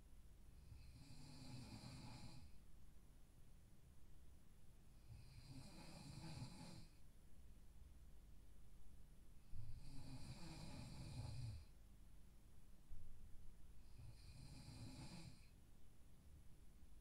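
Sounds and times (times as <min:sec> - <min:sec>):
person snoring: 0:00.8 - 0:02.5, 0:05.1 - 0:06.9, 0:09.7 - 0:11.7, 0:13.9 - 0:15.5.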